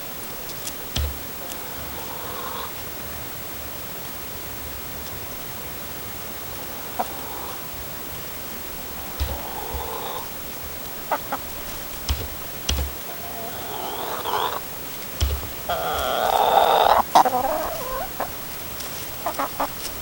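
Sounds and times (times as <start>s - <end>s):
hens calling: 0.5s - 3.0s, 6.3s - 20.0s
light clicks and knocks: 9.2s - 13.1s, 14.9s - 16.1s.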